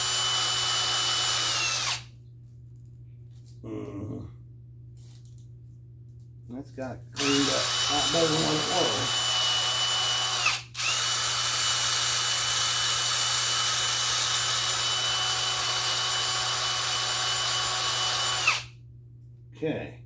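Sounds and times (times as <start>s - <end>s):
electric drill whining: 0.0s - 2.1s, 7.2s - 18.7s.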